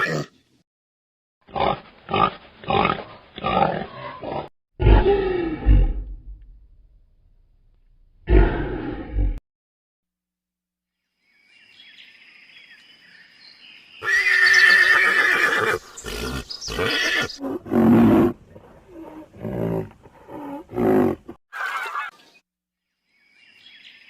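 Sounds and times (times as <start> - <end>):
loud drawn-out animal call: 14.0 - 22.2.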